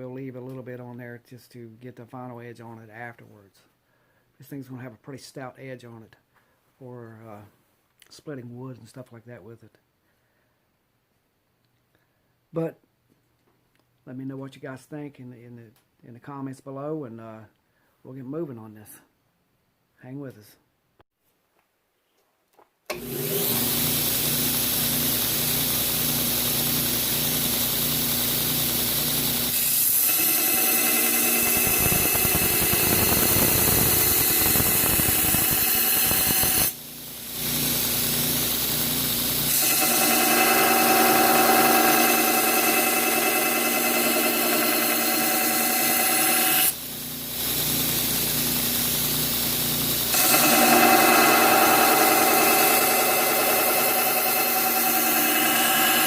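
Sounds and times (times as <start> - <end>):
electric grinder running: 22.9 - 56.0.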